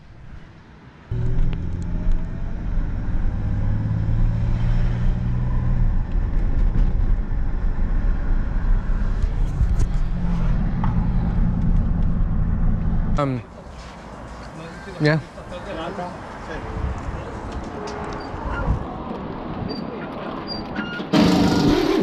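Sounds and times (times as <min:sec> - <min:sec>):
road rumble: 0:00.0 - 0:22.0
vehicle engine hum: 0:01.1 - 0:14.5.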